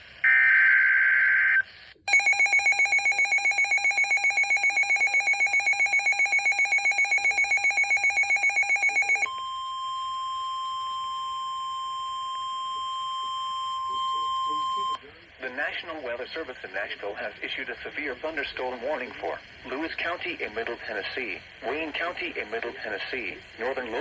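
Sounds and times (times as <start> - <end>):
rapid pulsing alarm beeps: 2.1 - 15.0
steady warning alarm tone: 2.1 - 15.0.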